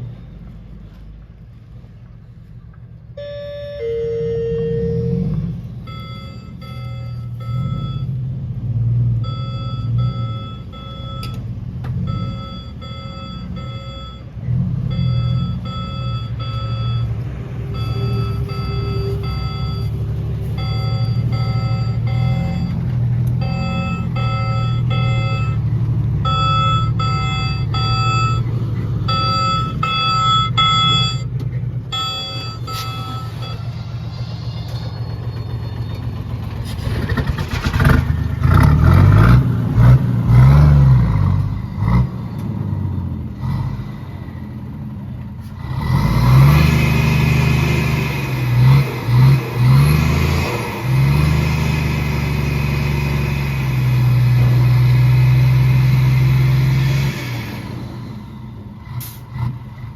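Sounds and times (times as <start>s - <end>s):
diesel engine rumble: 0.0s - 59.9s
back-up alarm beeping: 3.2s - 8.2s, 9.2s - 11.4s, 12.1s - 14.3s, 14.9s - 22.8s, 23.4s - 35.9s.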